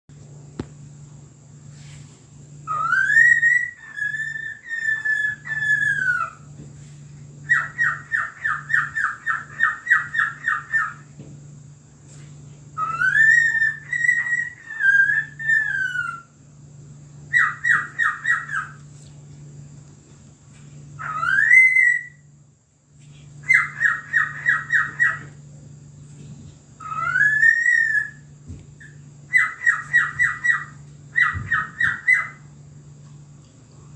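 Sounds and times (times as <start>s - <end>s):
bird whistling like a siren: 2.6s - 6.5s, 7.4s - 11.1s, 12.8s - 16.3s, 17.3s - 18.8s, 21.0s - 22.3s, 23.4s - 25.3s, 26.8s - 32.5s.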